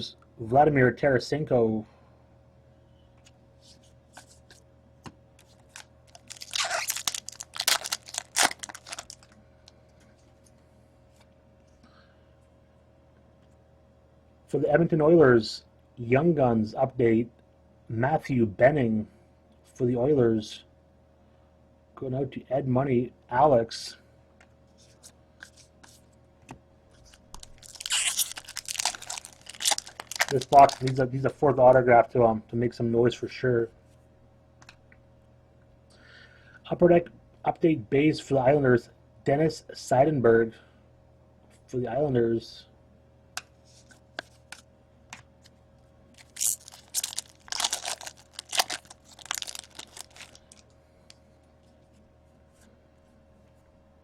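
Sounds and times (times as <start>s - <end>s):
faint steady hum: 0.0s - 54.0s
foil wrapper tearing and crinkling: 5.4s - 9.4s, 27.0s - 31.0s, 46.2s - 50.7s.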